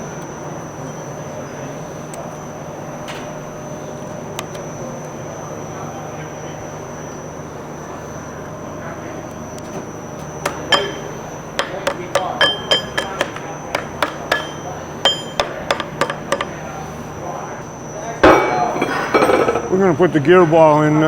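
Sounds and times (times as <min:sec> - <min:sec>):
shop hum: 0:00.0 - 0:21.0
hammer tapping metal band: 0:10.4 - 0:16.6.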